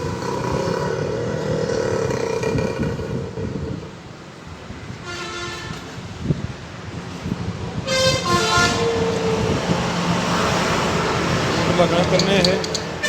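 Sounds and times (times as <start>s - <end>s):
street traffic: 0.0s - 13.0s
vehicle horns tooting: 5.0s - 6.0s, 7.8s - 9.6s.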